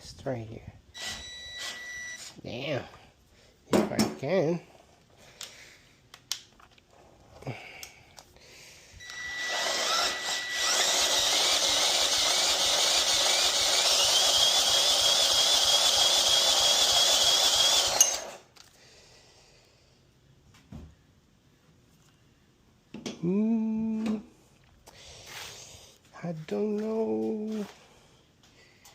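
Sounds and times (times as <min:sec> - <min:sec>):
engine cranking with starter whine: 0:09.1 - 0:18.4.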